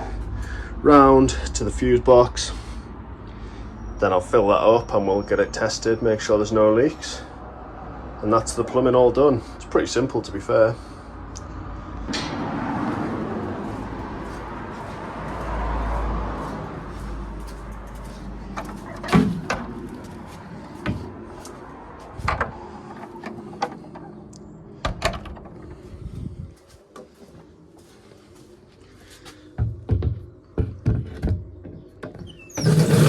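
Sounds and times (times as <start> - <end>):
sharp knocks and clunks: 12.1 - 13.0, 18.5 - 19.8, 29.6 - 33.0.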